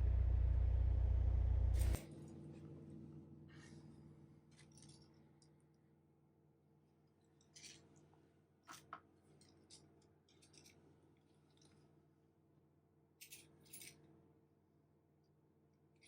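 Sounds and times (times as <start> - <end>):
faint steady hum: 0.0 - 5.7.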